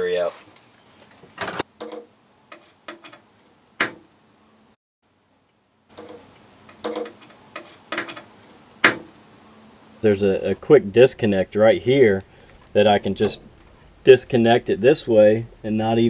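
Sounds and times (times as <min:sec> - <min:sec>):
hand tools clicking and knocking: 0:01.4 - 0:03.2, 0:03.8 - 0:04.0, 0:06.0 - 0:09.1.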